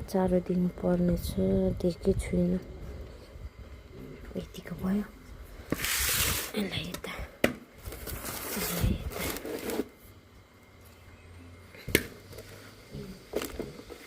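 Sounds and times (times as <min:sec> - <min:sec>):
low hum: 0:00.0 - 0:14.0.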